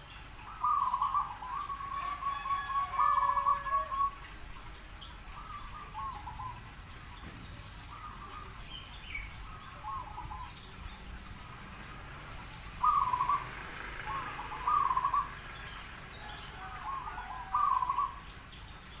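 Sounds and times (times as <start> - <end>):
dove cooing: 0.5 - 4.2, 12.8 - 15.4, 16.2 - 18.2.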